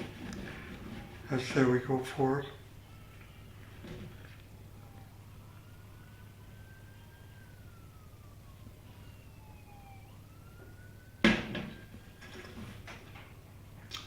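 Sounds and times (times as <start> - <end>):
distant siren wailing: 0.0 - 13.9
loud thump: 11.2 - 11.8.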